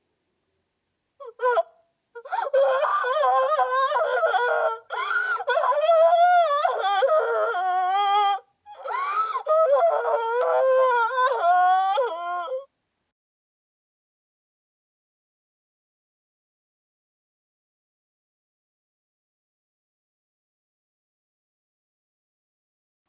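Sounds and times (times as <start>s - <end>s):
cartoon girl crying: 1.2s - 12.6s.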